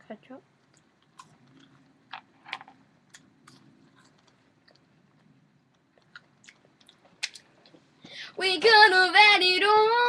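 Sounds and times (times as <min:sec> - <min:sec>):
person chewing: 0:03.1 - 0:07.8.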